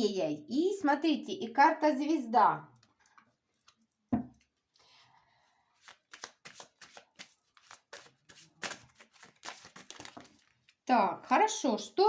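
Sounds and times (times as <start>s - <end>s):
cards being shuffled: 5.8s - 10.8s.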